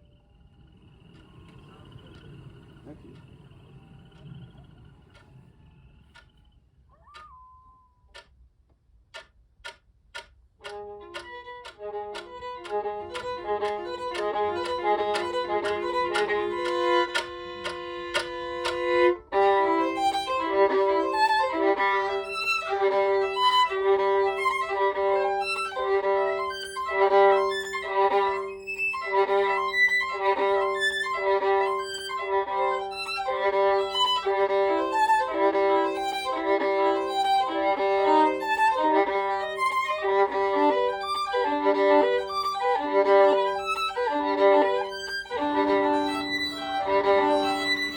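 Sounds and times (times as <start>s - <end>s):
solo violin playing: 10.7s - 47.9s.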